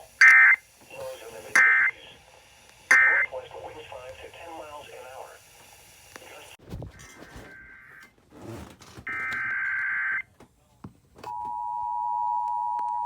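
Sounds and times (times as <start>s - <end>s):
buzzy digital data tones: 2.9s - 3.4s.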